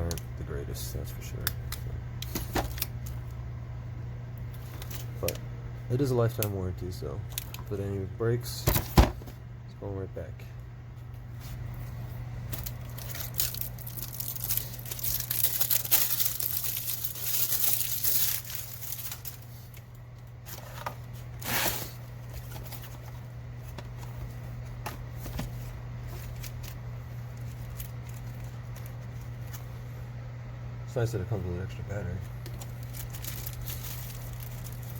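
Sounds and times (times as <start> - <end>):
steady low hum: 0.0 - 34.9
plastic packaging tearing and crinkling: 12.5 - 19.9, 26.1 - 29.7, 32.4 - 34.9.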